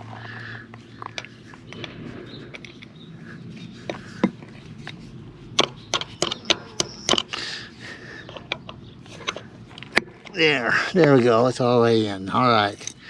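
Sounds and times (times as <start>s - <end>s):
wrench tapping metal pin: 5.6s - 7.4s.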